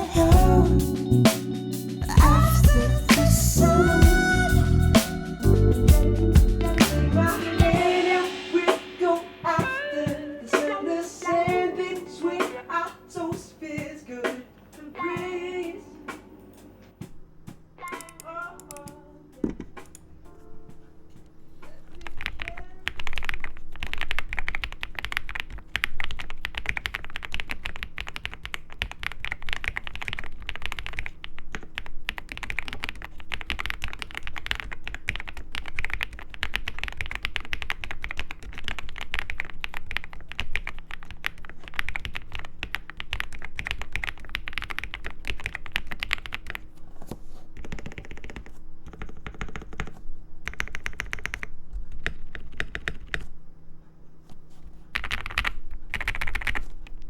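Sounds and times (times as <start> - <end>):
faint steady hum: 0.0 - 57.0
mechanical keyboard typing: 17.8 - 20.1, 21.7 - 46.8, 47.6 - 53.3, 54.9 - 57.0.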